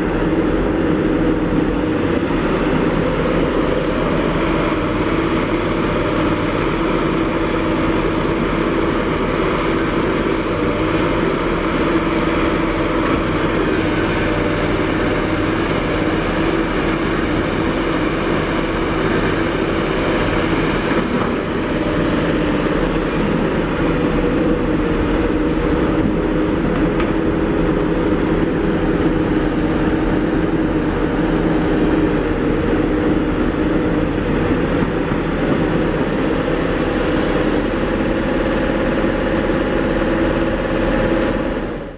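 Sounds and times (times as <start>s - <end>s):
heavy diesel machinery droning: 0.0s - 41.9s.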